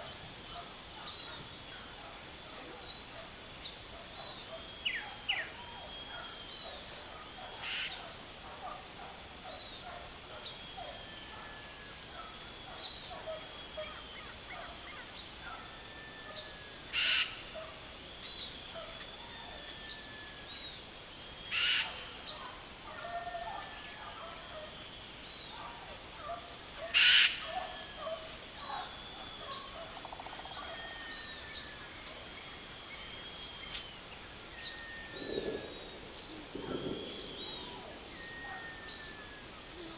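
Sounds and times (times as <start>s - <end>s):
insect hum: 0.0s - 39.9s
small birds chirping: 24.0s - 39.9s.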